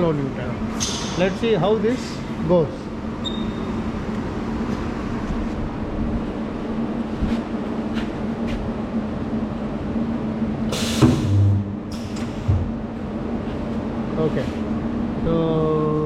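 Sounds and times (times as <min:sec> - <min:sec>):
machine hum: 0:02.1 - 0:16.0
hiss of electrodes closing: 0:10.7 - 0:12.7.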